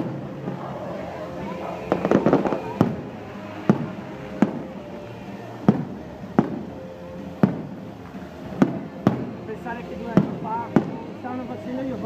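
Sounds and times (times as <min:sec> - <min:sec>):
fireworks shells bursting: 0:01.4 - 0:04.8.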